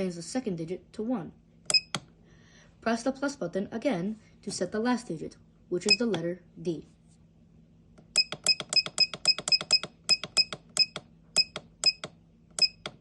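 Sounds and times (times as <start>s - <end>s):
control panel short beeps: 1.7s - 2.0s, 5.8s - 6.2s, 8.1s - 13.0s.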